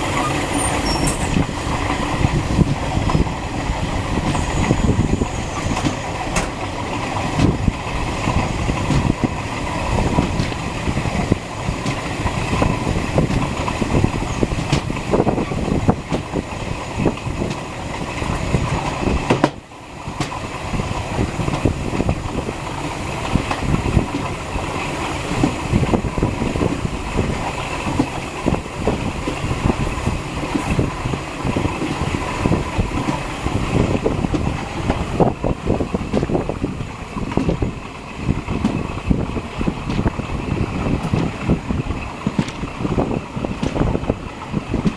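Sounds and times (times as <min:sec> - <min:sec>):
train rumbling on rails: 0:00.0 - 0:44.9
wheel clatter and clicks: 0:20.2 - 0:44.9.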